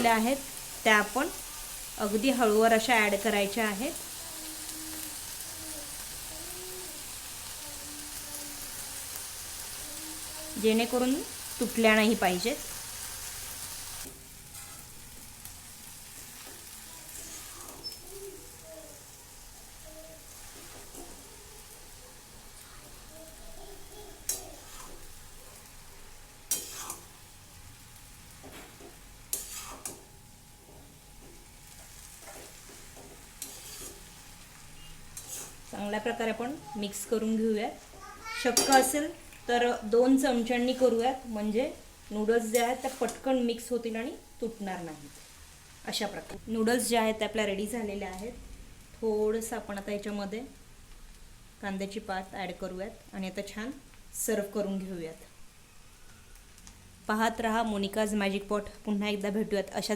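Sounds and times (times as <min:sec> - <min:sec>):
vegetables sizzling in hot oil: 0:00.0 - 0:59.9
utensil scraping a pan: 0:17.1 - 0:18.0, 0:24.3 - 0:25.1, 0:26.5 - 0:27.1, 0:28.4 - 0:30.1, 0:32.2 - 0:34.1, 0:34.8 - 0:35.7, 0:42.5 - 0:43.3.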